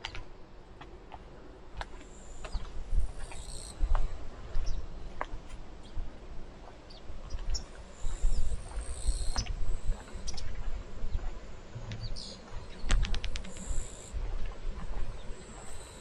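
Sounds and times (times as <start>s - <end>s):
birds chirping: 6.8s - 14.2s
sharp clicks: 12.8s - 13.7s.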